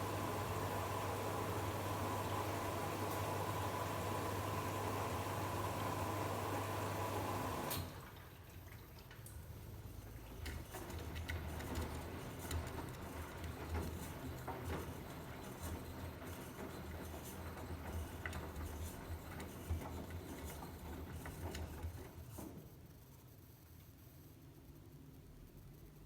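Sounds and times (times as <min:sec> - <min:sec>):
washing machine motor hum: 0:00.0 - 0:08.4, 0:10.2 - 0:22.3.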